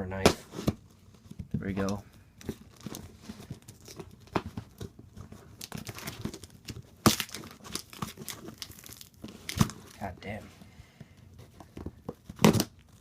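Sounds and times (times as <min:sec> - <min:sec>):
wrapping crinkling and tearing: 0:02.6 - 0:10.3.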